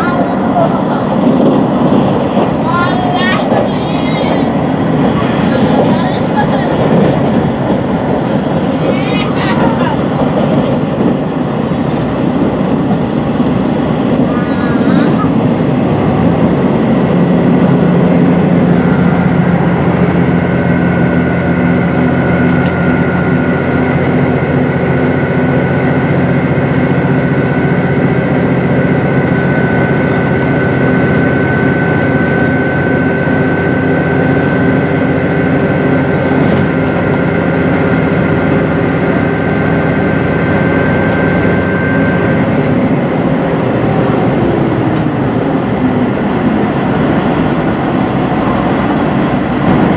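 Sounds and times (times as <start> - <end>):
diesel engine droning: 0.0 - 49.9
high whine: 0.0 - 49.9.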